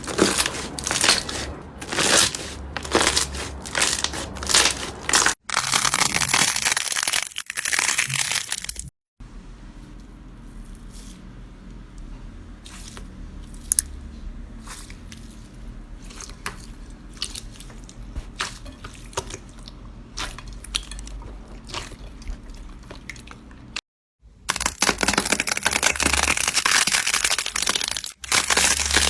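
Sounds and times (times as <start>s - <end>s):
slime squishing and popping: 0.0s - 8.6s, 24.5s - 29.0s.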